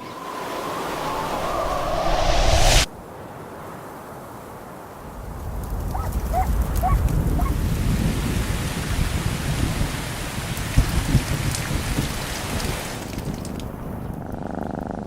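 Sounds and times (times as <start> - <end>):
rain hissing: 0.0 - 2.9
raindrop ticks: 5.6 - 7.5, 12.6 - 14.3.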